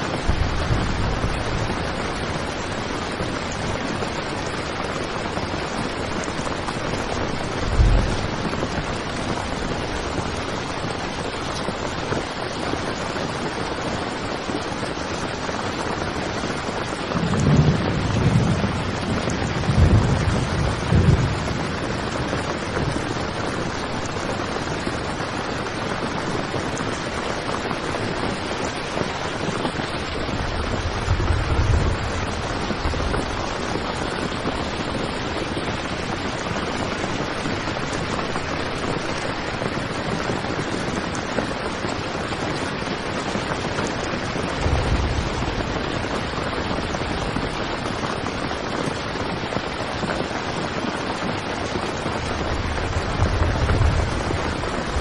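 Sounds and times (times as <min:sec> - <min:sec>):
heavy rain on a tent: 0:00.0 - 0:55.0
deep low rumble: 0:07.7 - 0:08.5.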